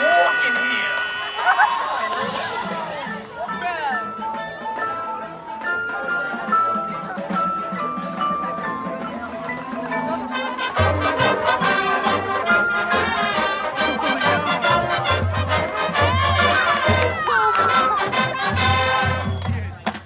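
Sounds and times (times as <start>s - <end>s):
marching band brass: 0.0s - 4.2s, 10.2s - 19.9s
mallet percussion: 1.2s - 20.0s.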